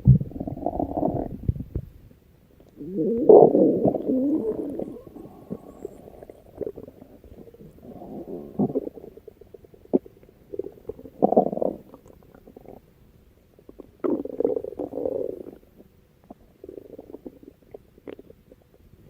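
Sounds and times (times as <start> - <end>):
stomach growling: 0.0 - 1.9, 2.6 - 12.9, 13.6 - 18.9.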